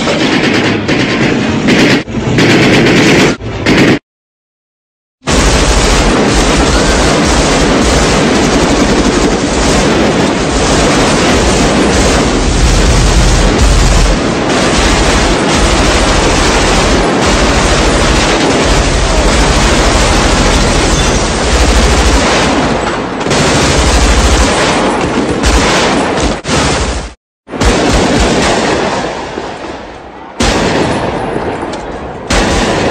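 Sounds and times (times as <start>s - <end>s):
heavy gunfire barrage: 0.0s - 4.0s, 5.2s - 32.9s.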